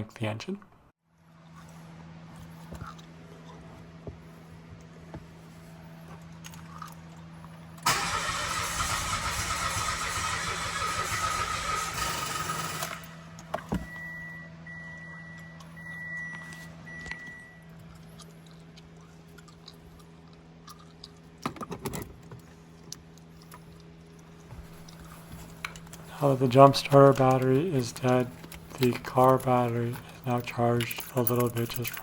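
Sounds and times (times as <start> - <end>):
starter motor cranking: 7.8 - 13.4.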